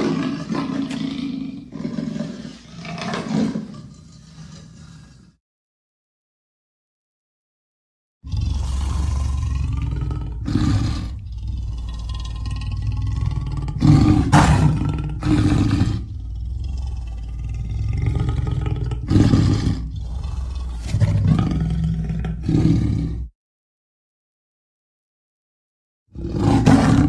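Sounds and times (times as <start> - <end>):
leopard growling: 0.0 - 5.4, 8.3 - 23.3, 26.2 - 27.0.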